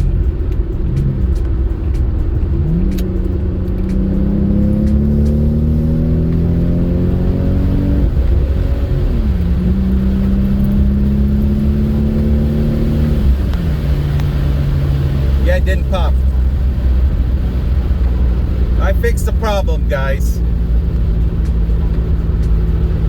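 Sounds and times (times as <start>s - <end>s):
car engine accelerating: 0.0s - 23.0s.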